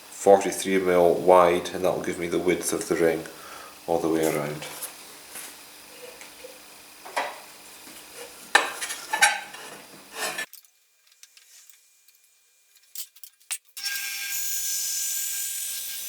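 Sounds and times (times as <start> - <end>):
wood and metal clinking: 8.2 - 10.7.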